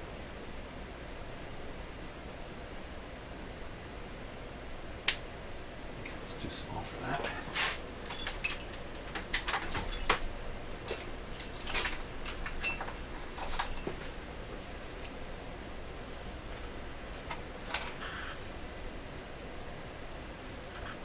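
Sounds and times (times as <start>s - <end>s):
small metal screws clinking: 8.0s - 14.0s, 14.6s - 15.3s.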